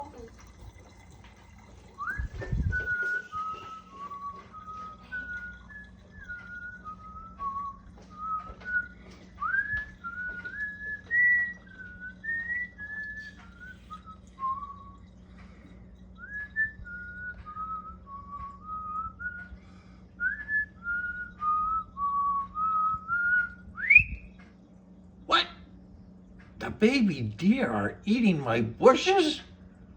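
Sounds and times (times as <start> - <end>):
faint low hum: 0.0 - 29.9
person whistling a tune: 2.0 - 15.0, 16.2 - 19.6, 20.2 - 24.3.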